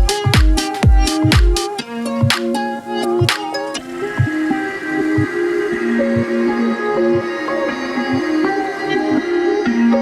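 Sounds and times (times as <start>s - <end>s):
steady kick drum: 0.0s - 2.4s
electronic house dance music: 0.0s - 10.0s
held synth chords: 0.0s - 10.0s.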